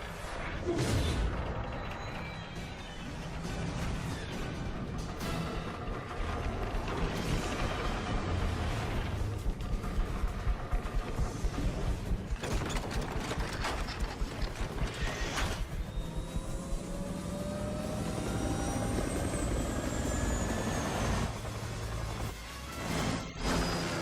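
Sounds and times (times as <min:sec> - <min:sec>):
slow gliding whines: 0:13.8 - 0:22.3.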